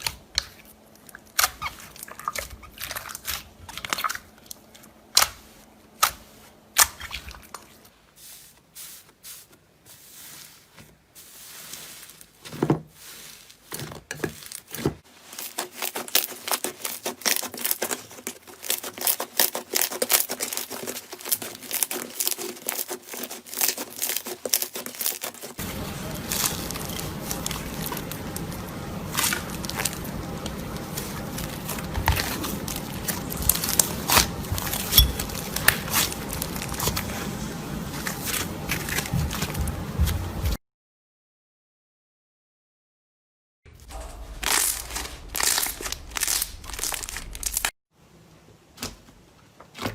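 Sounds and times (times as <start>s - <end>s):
slime crackling and popping: 44.4s - 47.7s.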